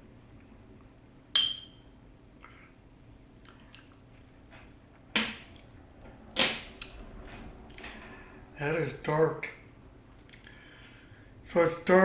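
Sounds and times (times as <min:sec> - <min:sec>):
glass clinking: 0:01.3 - 0:01.9.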